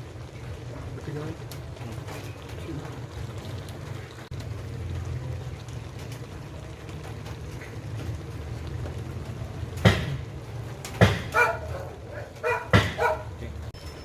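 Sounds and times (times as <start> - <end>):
dog barking: 11.3 - 13.4.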